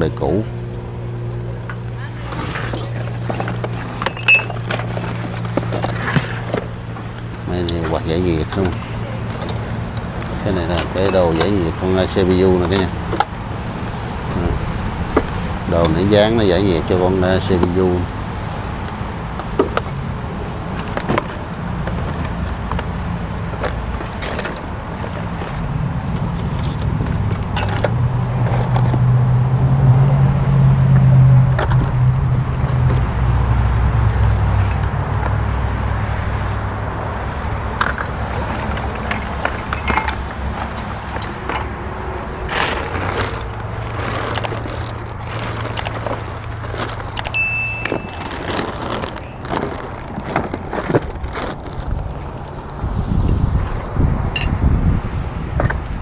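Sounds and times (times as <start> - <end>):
vehicle engine humming: 0.0 - 56.0
clicks and jangles: 4.0 - 6.6, 19.7 - 20.3, 43.4 - 49.6.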